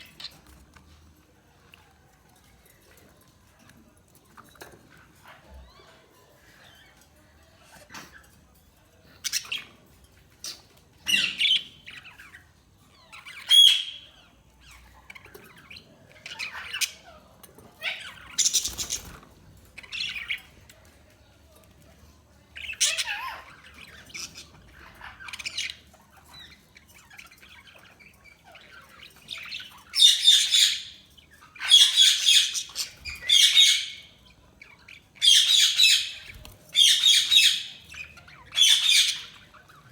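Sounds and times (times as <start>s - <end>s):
budgie chirping and squawking: 10.4s - 17.2s, 17.8s - 19.2s, 22.6s - 39.9s.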